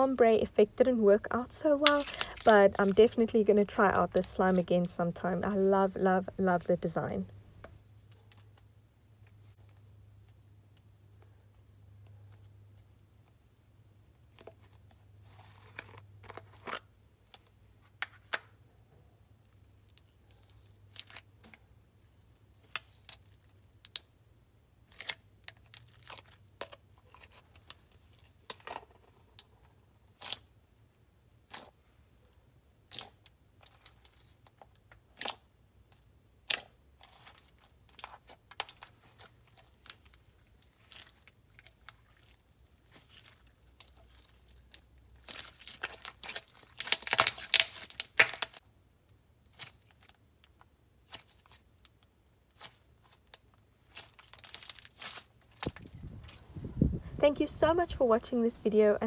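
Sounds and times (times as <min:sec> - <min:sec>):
slime popping and crackling: 0:01.5 - 0:04.7, 0:36.4 - 0:48.7, 0:52.5 - 0:56.0.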